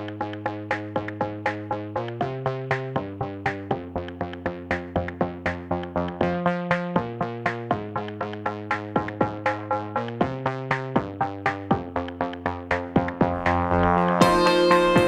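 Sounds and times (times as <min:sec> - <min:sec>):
electronic synth music: 0:00.0 - 0:15.0.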